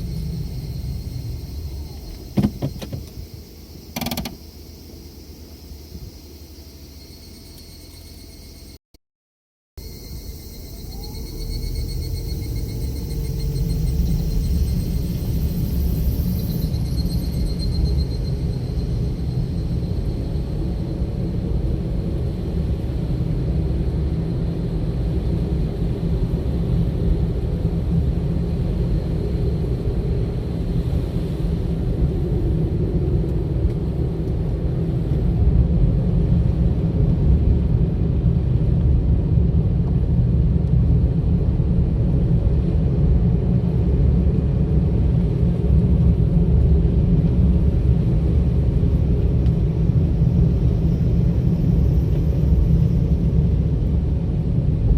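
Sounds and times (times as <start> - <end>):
car engine and tyres rumbling: 0.0 - 8.8, 9.8 - 54.9.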